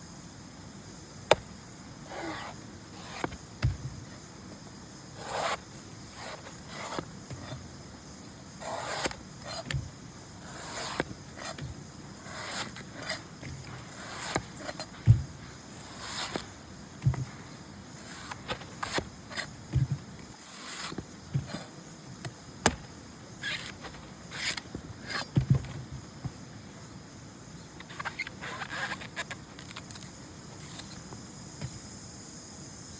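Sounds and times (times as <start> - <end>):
coconut scraping swishes: 1.3 - 26.5.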